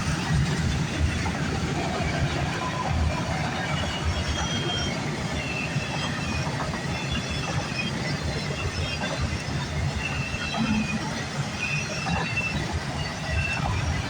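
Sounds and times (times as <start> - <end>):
train wheels rumbling on rail: 0.0 - 14.0
high-pitched wheel squeals: 3.5 - 14.0.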